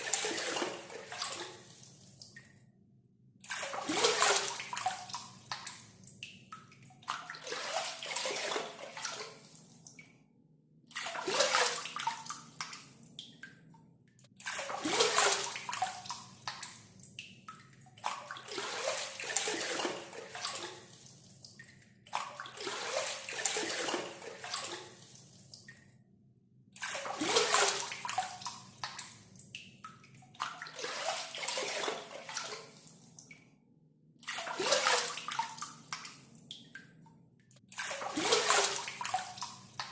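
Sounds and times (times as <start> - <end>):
water pouring from dipper: 7.2 - 9.4, 30.4 - 32.8, 34.3 - 35.7.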